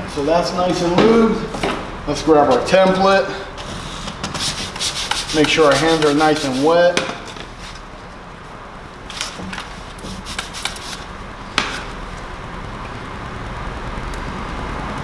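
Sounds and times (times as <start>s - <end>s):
plastic film crackling: 0.0s - 12.8s.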